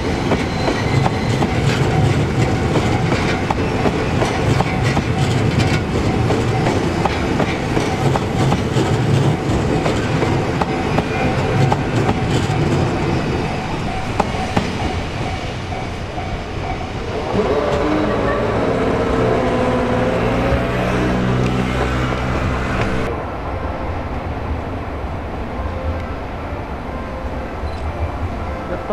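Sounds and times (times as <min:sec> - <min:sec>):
train wheels clattering over rail joints: 0:00.0 - 0:17.0.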